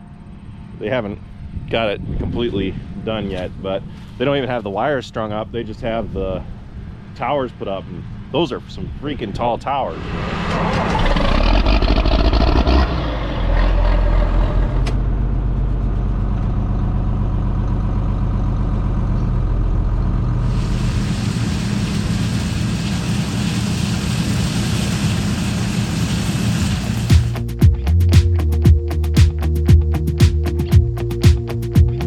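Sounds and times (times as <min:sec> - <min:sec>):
diesel engine running: 0:10.5 - 0:32.0
high hiss: 0:20.4 - 0:27.6.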